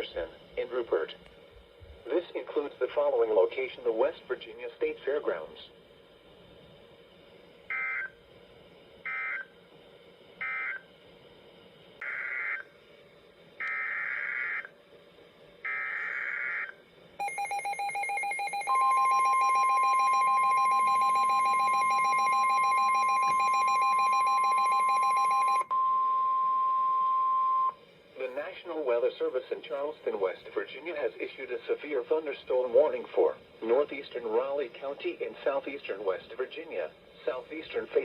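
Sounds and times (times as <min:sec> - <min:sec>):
steady warning alarm tone: 0:07.7 - 0:08.2, 0:09.0 - 0:09.5, 0:10.4 - 0:10.9, 0:12.0 - 0:12.7, 0:13.6 - 0:14.7, 0:15.6 - 0:27.8.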